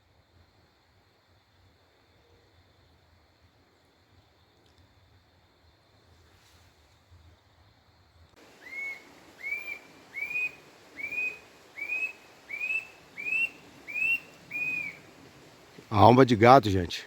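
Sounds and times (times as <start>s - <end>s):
bird whistled calls: 8.5s - 15.3s.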